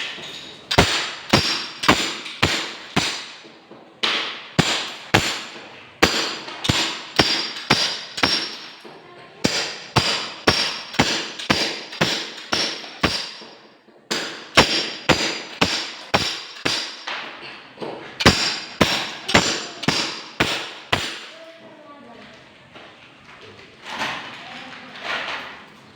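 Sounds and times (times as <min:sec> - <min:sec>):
hammer blows ringing metallic: 0:00.0 - 0:17.3, 0:18.2 - 0:21.4.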